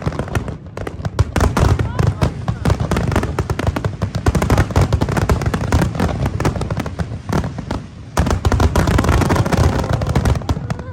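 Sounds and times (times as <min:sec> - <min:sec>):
fireworks booms: 0:00.0 - 0:10.9
fireworks crackling: 0:00.0 - 0:10.9.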